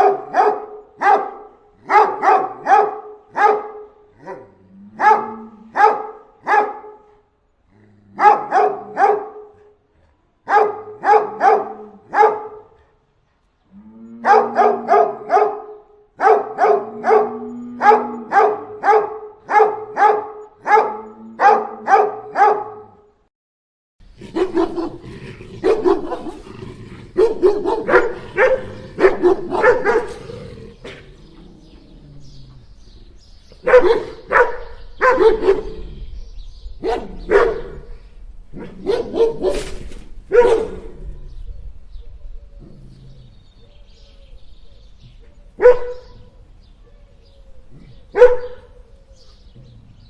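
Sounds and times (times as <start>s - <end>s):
dogs barking: 0.0s - 7.1s, 8.2s - 9.8s, 10.5s - 12.8s, 14.2s - 23.0s, 24.2s - 31.2s, 33.5s - 35.9s, 36.8s - 37.9s, 38.5s - 41.0s, 45.6s - 46.4s, 47.7s - 48.9s
background noise: 0.0s - 23.3s, 24.0s - 50.0s.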